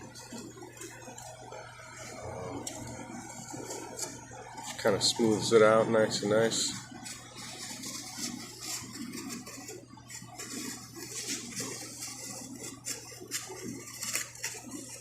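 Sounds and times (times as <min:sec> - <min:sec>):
steady low hum: 0:00.0 - 0:15.0
hand rubbing wet fabric: 0:06.8 - 0:15.0.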